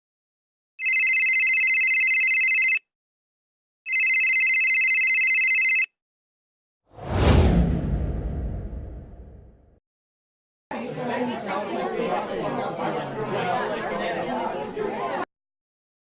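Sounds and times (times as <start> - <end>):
electronic phone ringtone: 0.8 - 2.8, 3.9 - 5.9
downward whoosh: 7.0 - 9.5.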